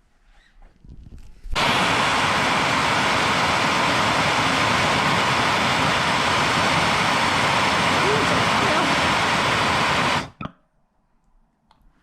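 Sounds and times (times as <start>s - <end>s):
gas torch flame rushing: 1.2s - 10.5s.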